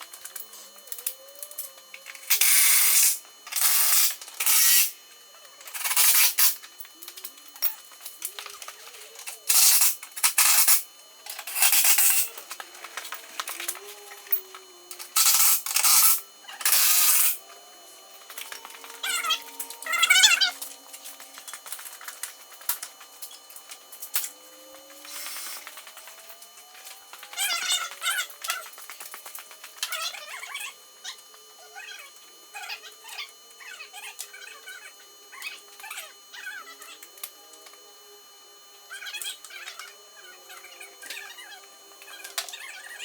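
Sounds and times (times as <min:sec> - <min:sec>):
impact wrench bursts: 0:02.2 - 0:05.0, 0:05.7 - 0:06.6, 0:09.4 - 0:17.6.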